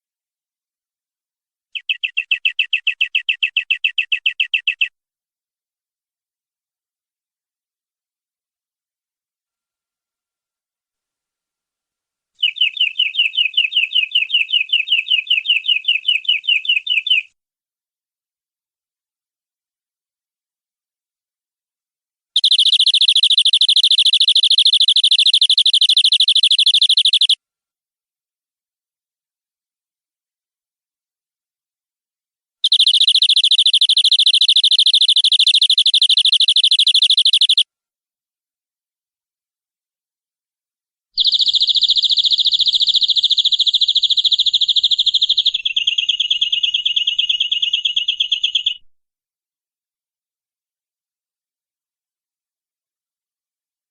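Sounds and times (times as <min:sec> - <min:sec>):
canary singing a rapid trill: 0:01.8 - 0:04.9, 0:12.4 - 0:17.3, 0:22.4 - 0:27.4, 0:32.6 - 0:37.6, 0:41.2 - 0:48.9.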